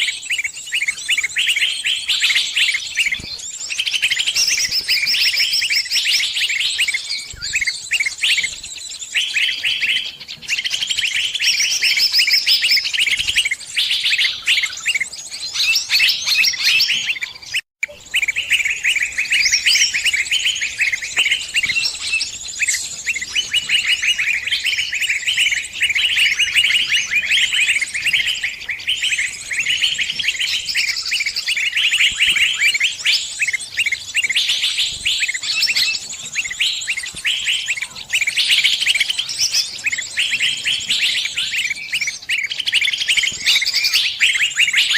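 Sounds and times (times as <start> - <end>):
small birds chirping and trilling: 0.0 - 44.9.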